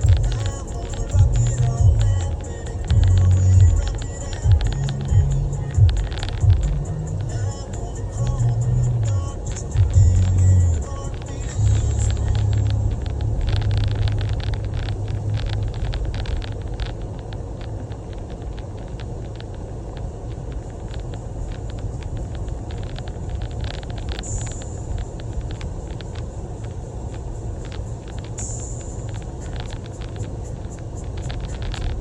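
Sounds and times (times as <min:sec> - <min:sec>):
car engine rumbling: 0:00.0 - 0:32.0.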